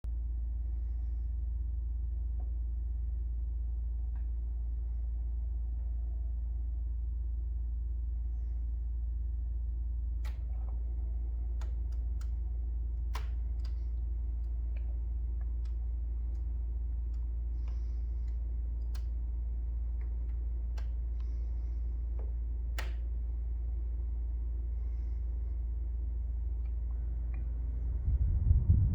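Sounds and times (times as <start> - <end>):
air conditioner low hum: 0.0 - 28.9
sharp irregular clicks: 10.2 - 23.8.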